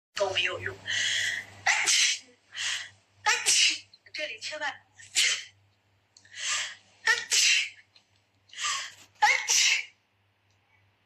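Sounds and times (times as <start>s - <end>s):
drawn-in breath: 0.8s - 1.6s
woman sneezing: 1.7s - 2.4s, 3.3s - 3.9s, 7.2s - 7.8s, 9.2s - 9.9s.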